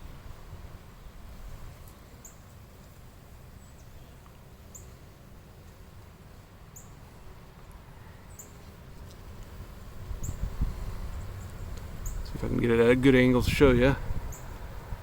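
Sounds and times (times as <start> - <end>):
wind on microphone: 9.9 - 15.0.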